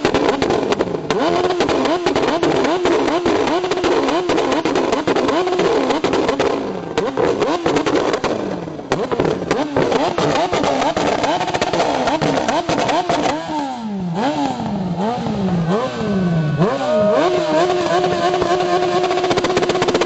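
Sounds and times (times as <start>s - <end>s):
exhaust crackles and pops: 0.0s - 13.5s, 17.6s - 20.0s
loud engine revving: 0.0s - 20.0s.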